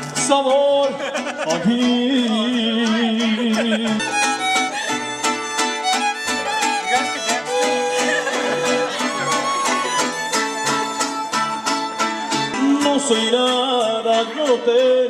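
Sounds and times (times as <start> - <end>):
guitar strumming: 0.0 - 15.0
violins playing melody: 3.9 - 12.9.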